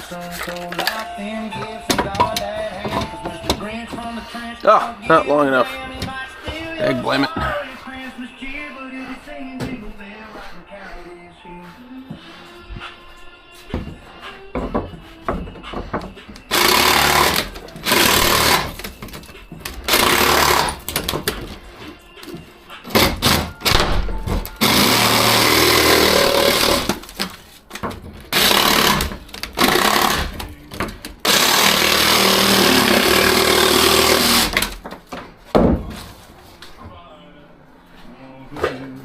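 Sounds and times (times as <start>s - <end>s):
power tool hammering rattle: 15.4s - 18.9s, 19.6s - 21.4s, 22.9s - 27.0s, 28.3s - 34.8s.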